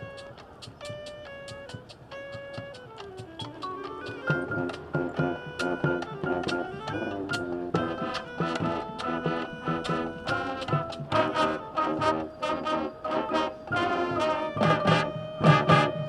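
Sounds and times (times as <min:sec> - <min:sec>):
marching band brass chords: 0:00.0 - 0:16.0
sharp percussion hits: 0:03.3 - 0:16.0.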